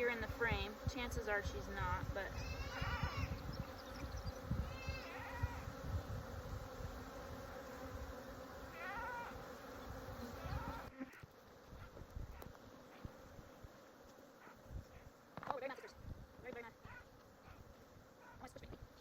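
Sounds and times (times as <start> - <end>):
honeybees buzzing: 0.0 - 19.0.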